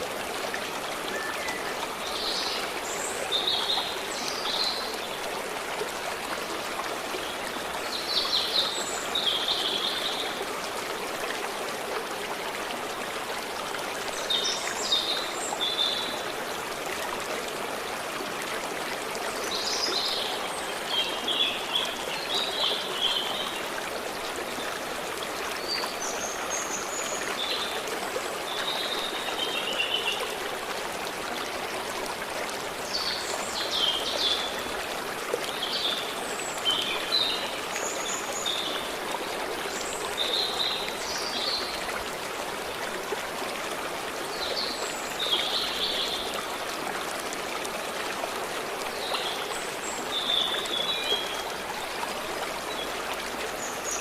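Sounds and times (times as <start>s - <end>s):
flowing stream: 0.0s - 54.0s
bird song: 1.0s - 5.2s.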